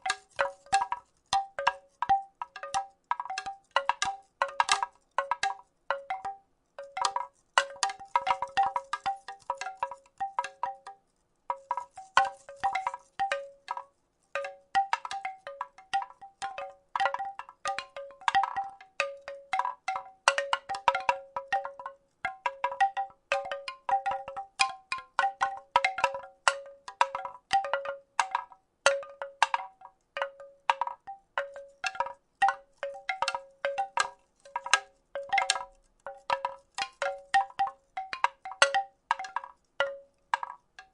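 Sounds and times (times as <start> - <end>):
wooden rattle shaking: 0.0 - 40.9.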